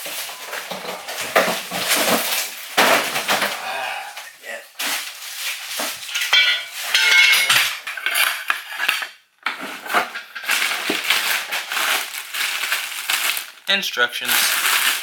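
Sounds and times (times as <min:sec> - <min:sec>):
parts clinking and clattering: 0:06.0 - 0:13.4
packaging rustling: 0:09.5 - 0:15.0.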